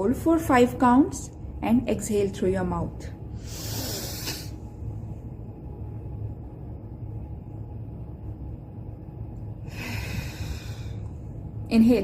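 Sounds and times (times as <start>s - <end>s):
low room hum: 0.0s - 12.0s
breathy exhale: 3.4s - 4.6s, 9.7s - 11.1s.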